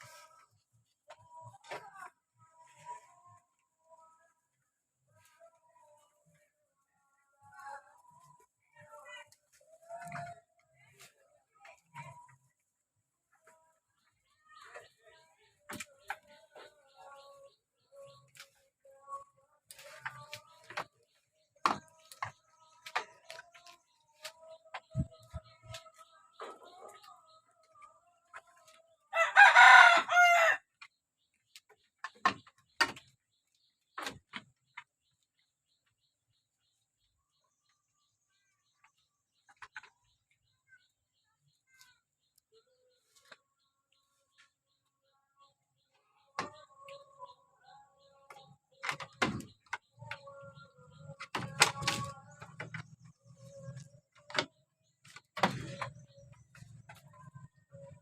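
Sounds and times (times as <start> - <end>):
rooster crowing: 29.1 - 30.6.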